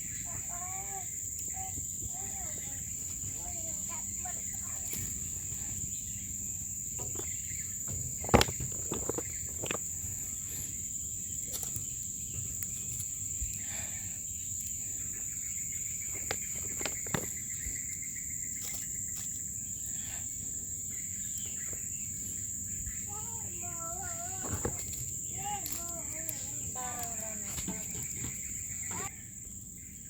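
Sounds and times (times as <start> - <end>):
high-pitched insect chorus: 0.0 - 30.0
sharp clicks and knocks: 7.0 - 9.9, 16.1 - 17.4.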